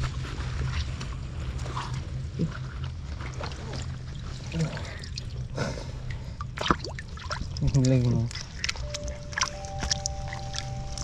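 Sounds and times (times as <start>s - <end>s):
steady low hum: 0.0s - 11.0s
water splashing and sloshing: 0.0s - 11.0s.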